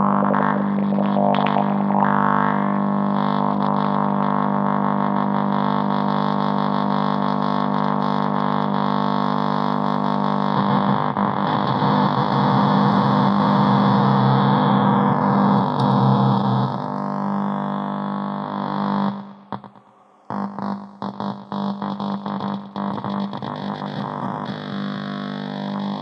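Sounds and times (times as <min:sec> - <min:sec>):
buzzy electronic drone: 0:00.0 - 0:26.0.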